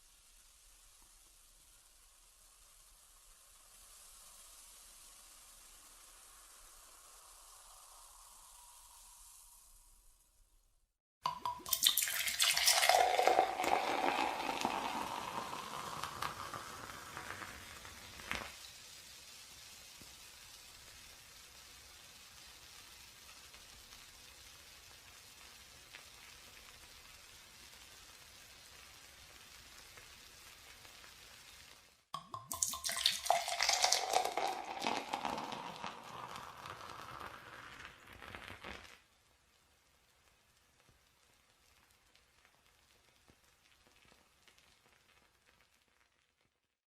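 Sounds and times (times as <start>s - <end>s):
crackling fizz: 0.0s - 46.8s
drink pouring into glass: 11.2s - 18.6s, 32.2s - 38.9s.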